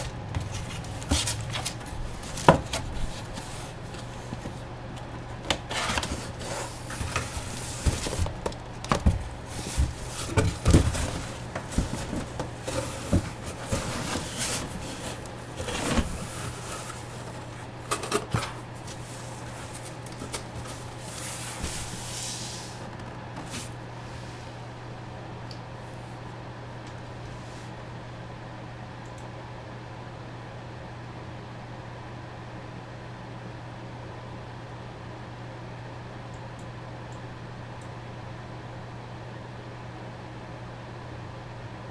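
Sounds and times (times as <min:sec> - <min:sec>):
packaging being handled: 0:00.0 - 0:23.8
steady low hum: 0:00.0 - 0:28.6.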